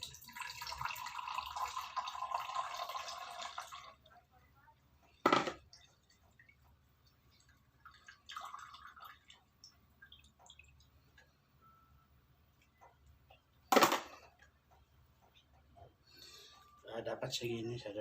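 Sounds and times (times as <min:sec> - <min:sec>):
liquid dripping: 0:05.6 - 0:11.4.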